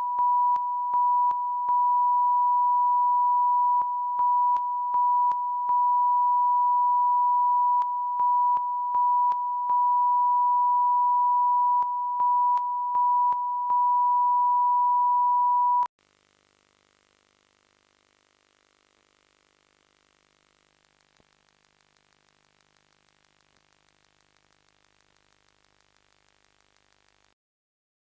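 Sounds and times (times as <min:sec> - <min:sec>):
electronic test tone: 0:00.0 - 0:15.9.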